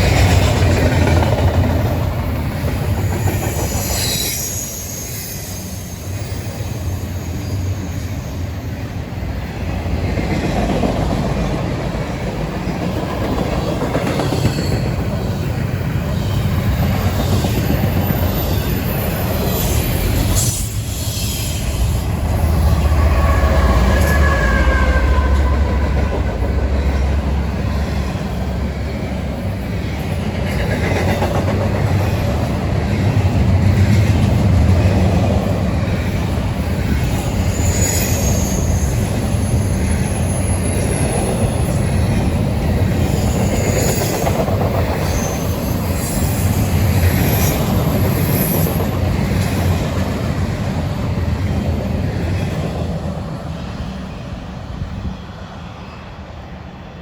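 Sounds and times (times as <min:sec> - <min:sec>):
freight train rumbling past: 0:00.0 - 0:57.0
wheel squeals: 0:03.2 - 0:08.4, 0:37.1 - 0:41.8, 0:43.0 - 0:49.1.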